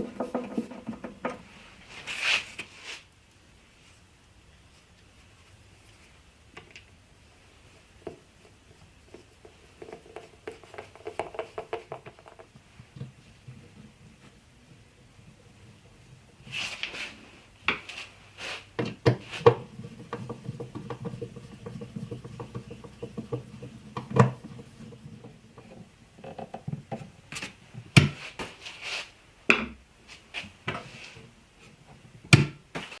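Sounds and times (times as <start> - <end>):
wooden parts knocking and clattering: 0.0 - 1.4.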